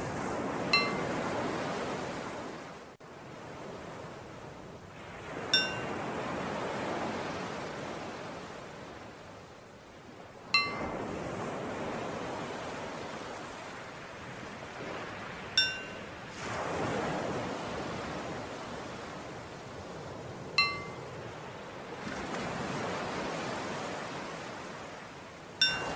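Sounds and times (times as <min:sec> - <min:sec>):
ocean waves washing: 0:00.0 - 0:25.9
small bell struck: 0:00.7 - 0:01.0, 0:05.5 - 0:05.9, 0:10.6 - 0:10.9, 0:15.6 - 0:16.0, 0:20.6 - 0:21.0, 0:25.6 - 0:25.9.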